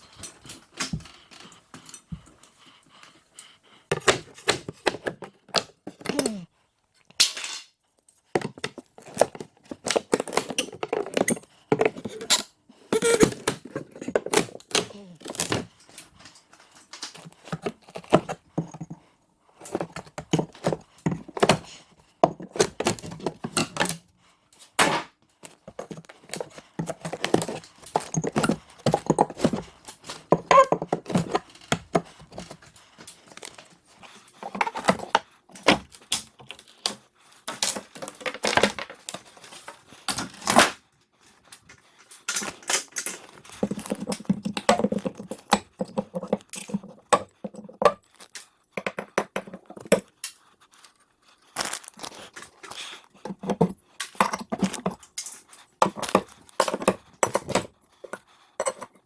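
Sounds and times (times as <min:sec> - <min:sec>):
tools knocking and clattering: 0:08.4 - 0:12.4, 0:19.6 - 0:24.0, 0:24.8 - 0:32.7, 0:42.4 - 0:48.1, 0:48.8 - 0:50.1, 0:53.2 - 0:59.0.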